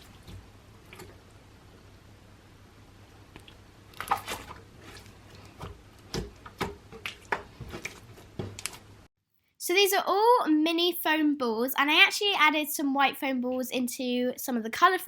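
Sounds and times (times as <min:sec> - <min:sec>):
slime squished by hand: 0:03.3 - 0:08.8.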